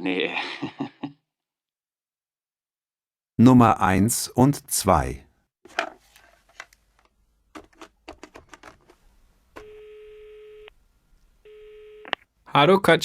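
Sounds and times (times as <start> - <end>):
telephone ringing tone: 9.6 - 10.7, 11.5 - 12.2.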